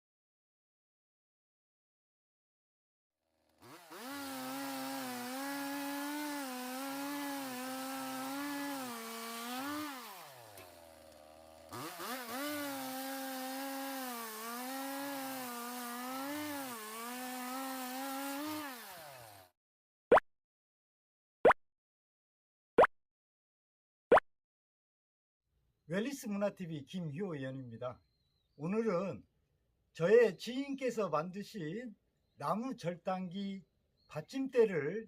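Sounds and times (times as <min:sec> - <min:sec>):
chainsaw cutting wood: 0:03.3 - 0:19.6.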